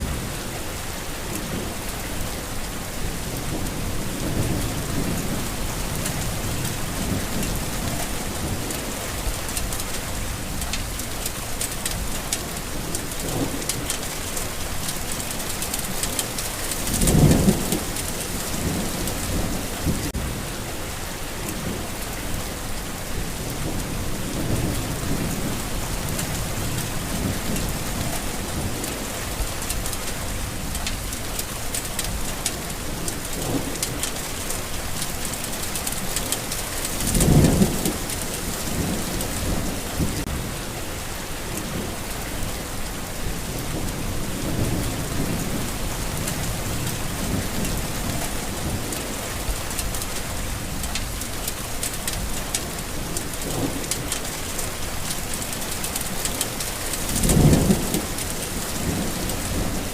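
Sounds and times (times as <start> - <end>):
steady rain falling: 0.0 - 59.9
thunder rumbling: 12.5 - 20.6, 35.7 - 40.6, 56.1 - 59.9.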